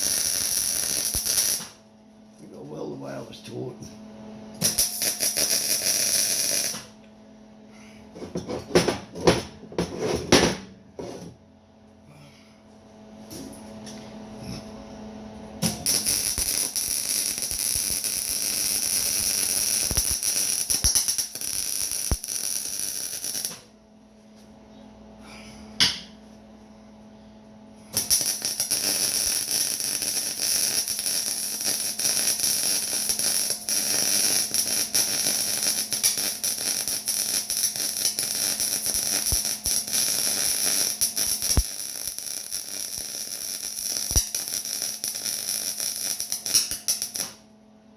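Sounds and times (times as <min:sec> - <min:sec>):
welder crackling hiss: 0:00.0 - 0:01.8, 0:04.6 - 0:06.9, 0:15.6 - 0:23.7, 0:28.0 - 0:47.4.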